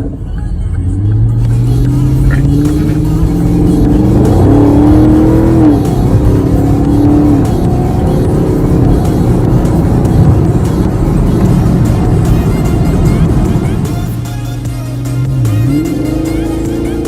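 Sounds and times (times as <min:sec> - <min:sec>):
car engine accelerating: 0:00.0 - 0:17.0.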